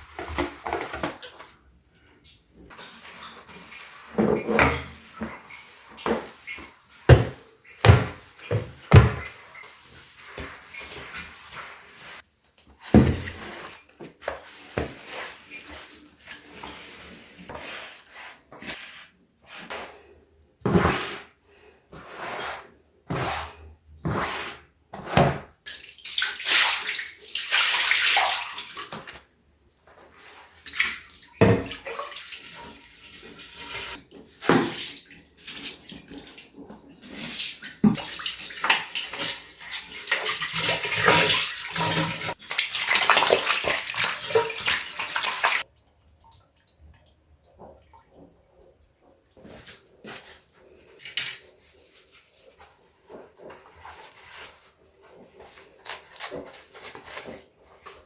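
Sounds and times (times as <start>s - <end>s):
running water: 30.6s - 51.4s
water splashing: 37.2s - 46.8s.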